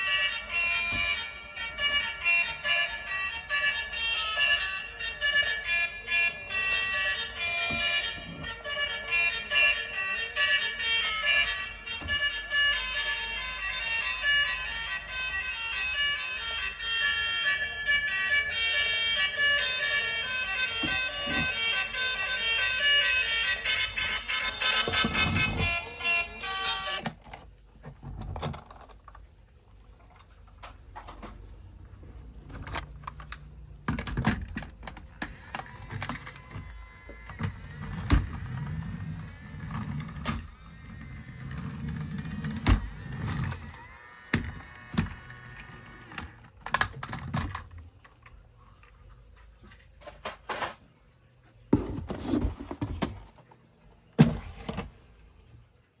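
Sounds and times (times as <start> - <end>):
electric toy motor whirring: 0.0 - 27.2, 35.1 - 46.8.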